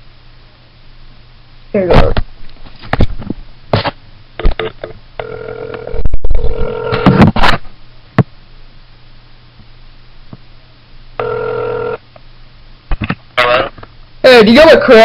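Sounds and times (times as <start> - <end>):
telephone call-progress tone: 4.6 - 7.2, 11.2 - 12.0.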